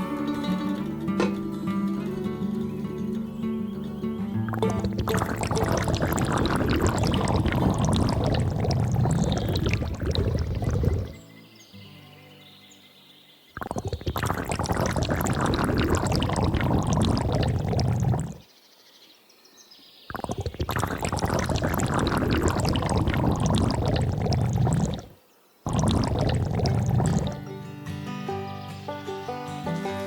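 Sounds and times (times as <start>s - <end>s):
water pouring and splashing: 4.5s - 11.2s, 13.6s - 18.4s, 20.1s - 27.4s.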